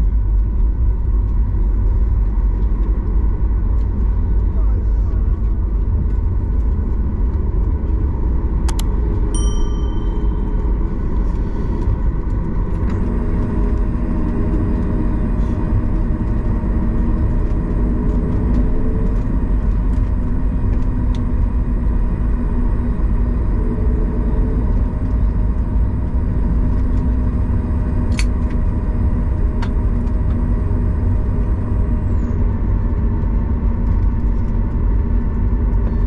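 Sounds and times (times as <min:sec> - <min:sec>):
airplane cabin rumble: 0:00.0 - 0:36.0
click: 0:08.7 - 0:08.9
single chime: 0:09.4 - 0:11.6.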